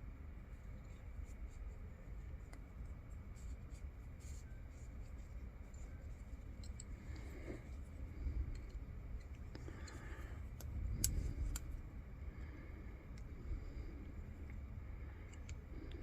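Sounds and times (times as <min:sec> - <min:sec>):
steady low hum: 0:00.0 - 0:16.0
faint scratching: 0:00.5 - 0:16.0
small metal parts clicking: 0:06.4 - 0:07.3, 0:08.3 - 0:11.8.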